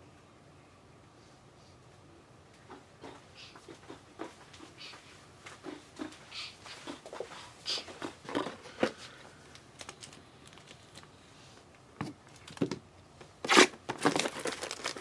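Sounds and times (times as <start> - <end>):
foil wrappers crinkling and tearing: 9.5 - 11.1, 13.5 - 15.0.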